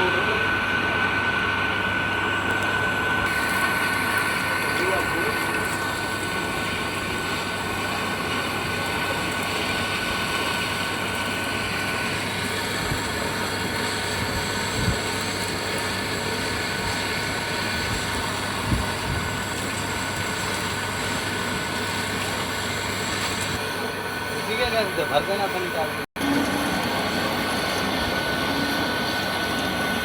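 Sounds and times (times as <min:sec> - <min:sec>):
compressor running with hum: 0:00.0 - 0:30.0.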